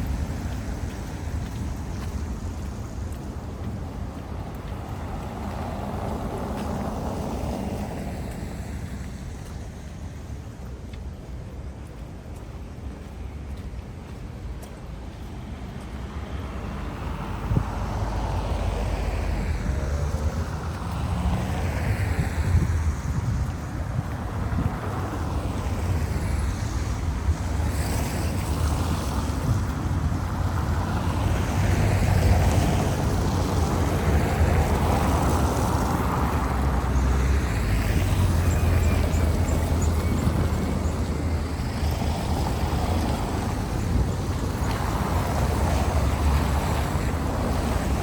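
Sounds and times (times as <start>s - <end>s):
distant traffic: 0.0s - 48.0s
wind buffeting microphone: 16.8s - 48.0s.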